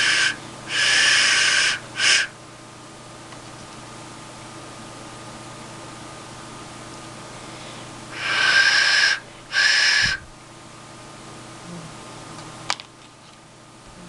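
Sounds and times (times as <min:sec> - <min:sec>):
clay whistle blown: 0:00.0 - 0:02.4.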